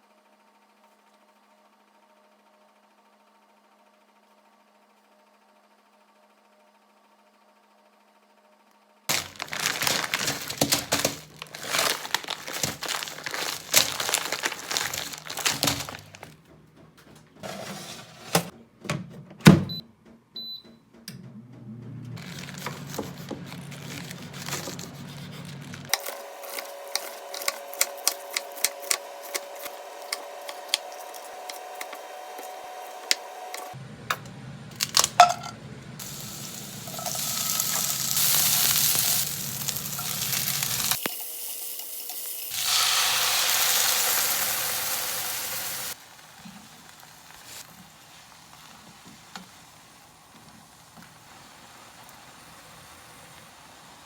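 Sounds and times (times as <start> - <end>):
appliance hum with clicks: 8.6 - 45.6
packaging crinkling and rustling: 9.1 - 16.4, 22.2 - 32.0, 36.0 - 41.1, 42.6 - 51.6
food sizzling in a pan: 36.0 - 54.0.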